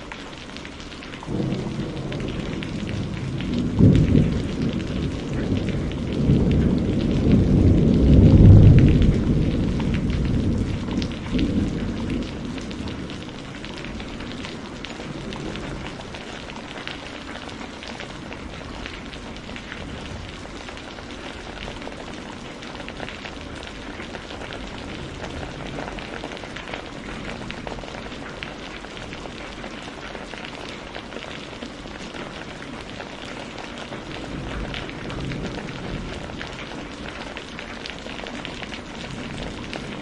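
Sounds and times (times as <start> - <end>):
steady rain falling: 0.0 - 40.0.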